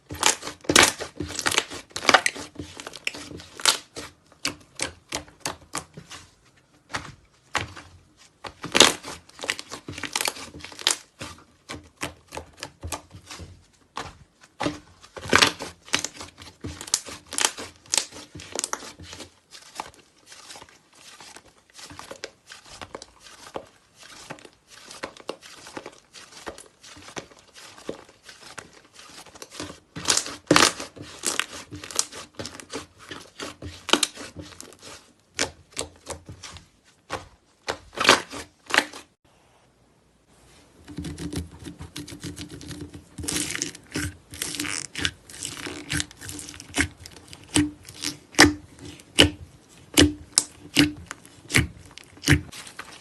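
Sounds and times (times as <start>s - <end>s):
slime crackling and popping: 41.1s - 52.6s.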